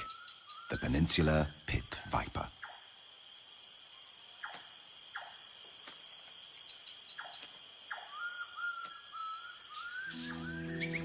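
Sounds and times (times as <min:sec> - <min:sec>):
crickets trilling: 0:00.0 - 0:11.0
downward-sweeping chirps: 0:07.9 - 0:11.0.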